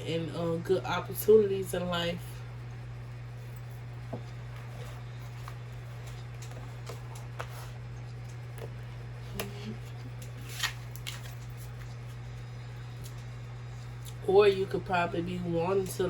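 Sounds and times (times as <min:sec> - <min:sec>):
steady low hum: 0:00.0 - 0:16.0
cards shuffling: 0:09.3 - 0:12.2.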